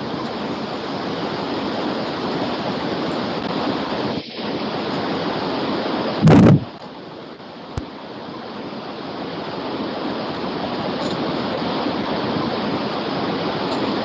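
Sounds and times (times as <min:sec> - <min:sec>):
steady rushing noise: 0:00.0 - 0:14.0
loud burst of noise: 0:00.8 - 0:06.8.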